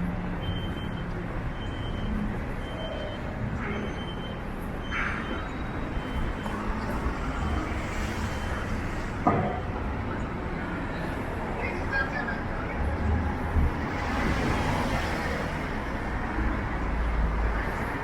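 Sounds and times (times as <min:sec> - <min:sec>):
passing traffic: 0:00.0 - 0:18.0
short high beeps: 0:01.6 - 0:06.6.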